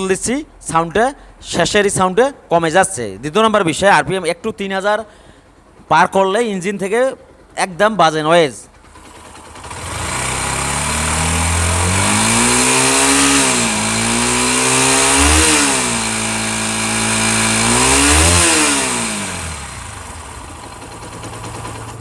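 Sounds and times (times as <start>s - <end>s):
motorcycle engine revving: 8.7s - 22.0s.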